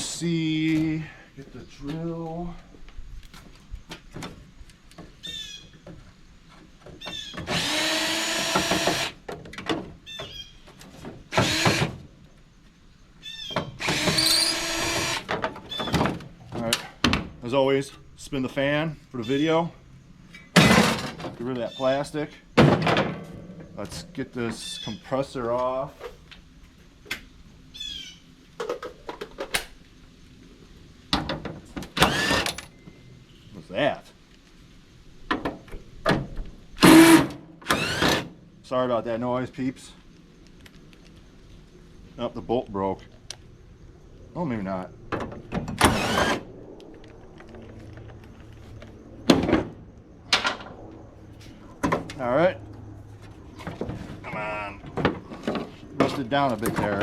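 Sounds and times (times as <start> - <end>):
power drill motor whine: 7.4 - 9.2, 11.3 - 11.9, 13.8 - 15.3, 32.0 - 32.6, 36.8 - 38.3, 45.8 - 46.5.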